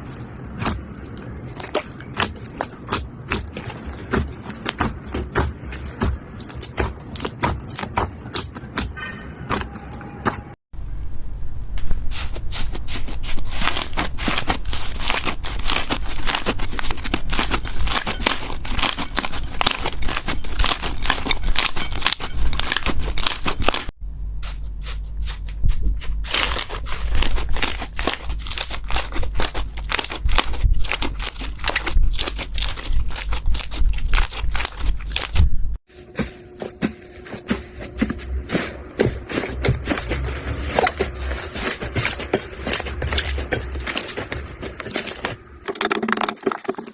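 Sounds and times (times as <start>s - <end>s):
slime crackling and popping: 13.0s - 23.9s, 25.3s - 35.5s.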